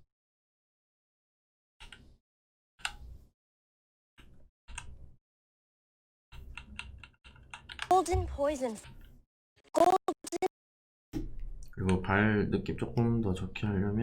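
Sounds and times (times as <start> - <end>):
keyboard and mouse clicks: 1.8 - 2.1, 4.2 - 5.0, 6.3 - 9.0.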